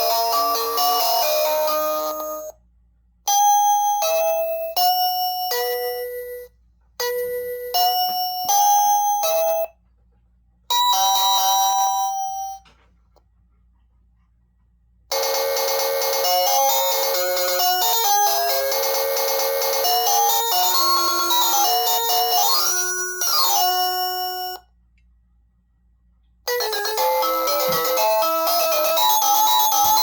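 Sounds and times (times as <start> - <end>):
electronic doorbell chimes: 0.0 - 2.6, 3.3 - 9.7, 10.7 - 12.7, 15.1 - 24.7, 26.5 - 30.0.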